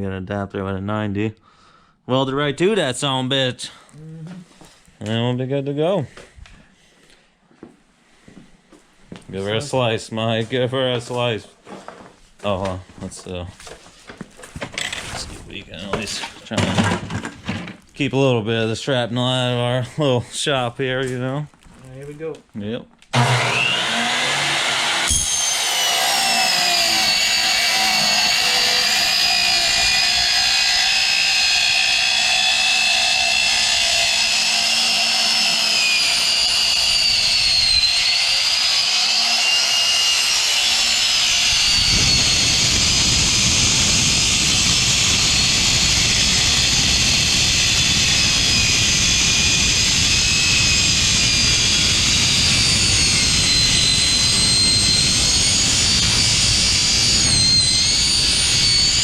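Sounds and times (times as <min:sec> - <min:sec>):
power saw cutting metal: 0:23.1 - 0:59.0
low rough rasp: 0:23.2 - 0:59.0.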